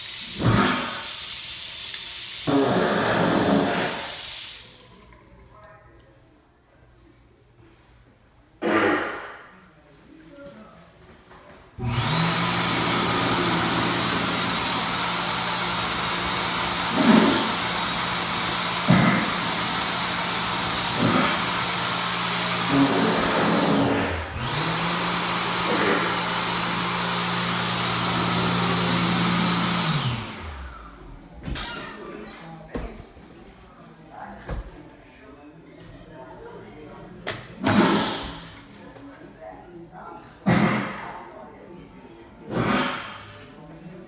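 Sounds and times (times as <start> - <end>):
electric blower motor humming and whining: 11.8 - 31.0.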